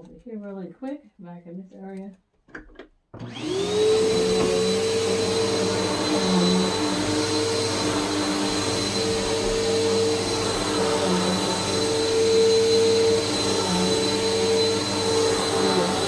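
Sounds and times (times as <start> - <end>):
vacuum cleaner running: 3.2 - 16.0.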